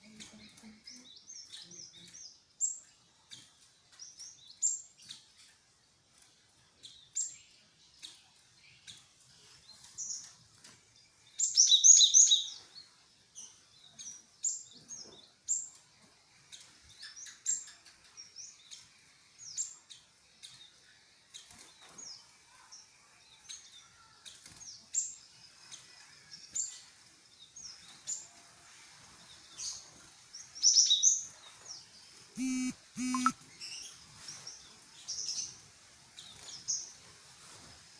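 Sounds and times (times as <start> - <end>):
tit calling high notes: 32.4 - 33.4.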